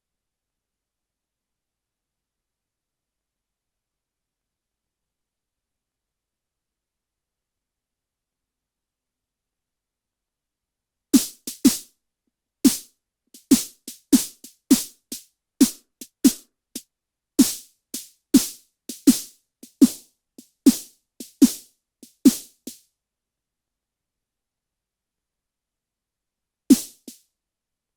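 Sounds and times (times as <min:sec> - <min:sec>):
synthesized snare drum hits: 0:11.2 - 0:11.8, 0:12.7 - 0:14.9, 0:17.4 - 0:20.0, 0:20.7 - 0:21.6, 0:22.2 - 0:22.8, 0:26.7 - 0:27.2.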